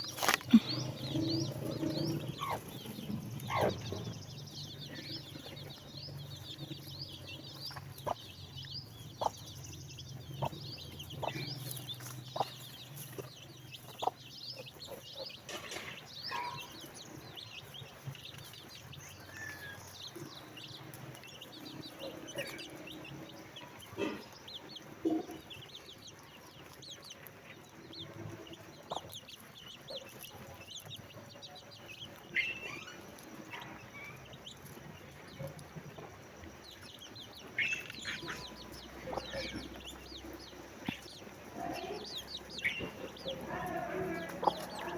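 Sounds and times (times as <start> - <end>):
lower clucking calls: 0.0 - 6.7
baby chicks peeping: 0.0 - 44.9.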